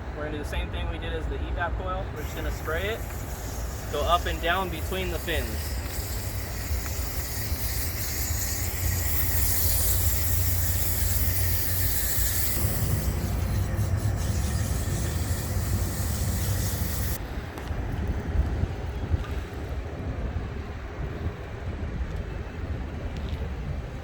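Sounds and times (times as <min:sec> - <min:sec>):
wind rumble on microphone: 0:00.0 - 0:24.0
spray hissing: 0:02.2 - 0:17.2.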